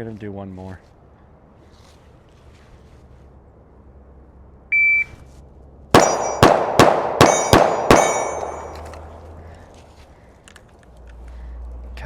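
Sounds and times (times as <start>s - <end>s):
shot timer beep: 4.8s - 5.2s
pistol shots: 5.9s - 8.8s
steel target plates ringing: 6.0s - 6.6s, 7.2s - 8.9s.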